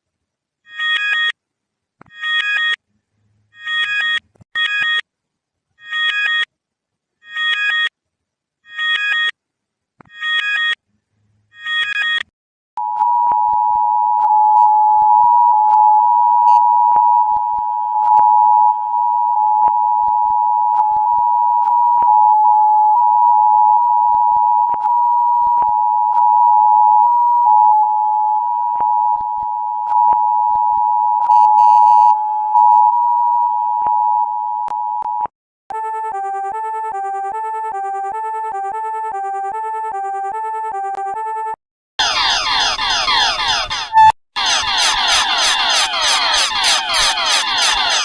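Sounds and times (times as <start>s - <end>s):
two-tone alarm: 12.8s - 35.0s, 43.8s - 44.2s
pulsing electronic beeps: 27.6s - 33.0s, 42.0s - 48.0s.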